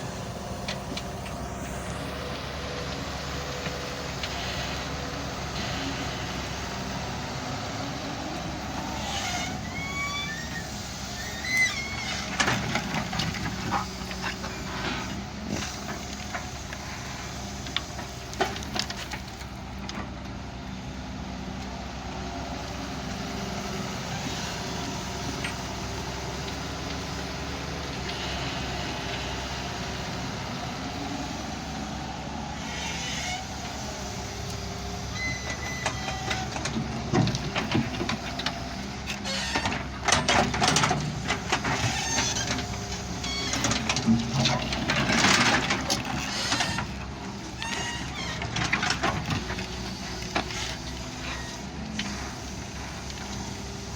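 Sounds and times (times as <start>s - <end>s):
diesel engine running: 0.0s - 53.9s
knocks and short squeaks: 9.0s - 12.3s, 35.1s - 36.6s, 47.6s - 48.7s.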